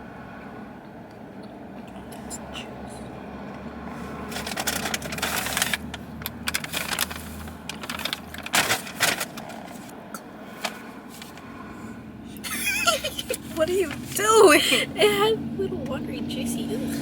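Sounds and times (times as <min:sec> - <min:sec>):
food packaging crinkling: 0:04.3 - 0:09.9.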